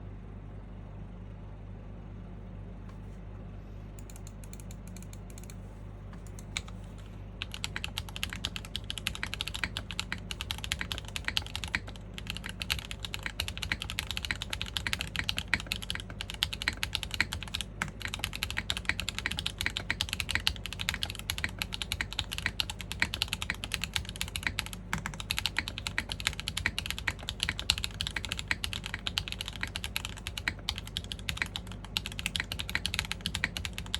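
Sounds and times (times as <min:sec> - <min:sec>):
low background hum: 0:00.0 - 0:33.9
mechanical keyboard typing: 0:04.0 - 0:05.6, 0:06.2 - 0:33.9.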